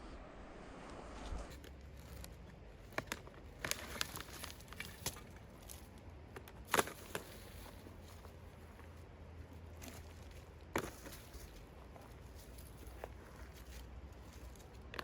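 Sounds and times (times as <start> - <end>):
clicks and knocks of objects: 1.5 - 7.8.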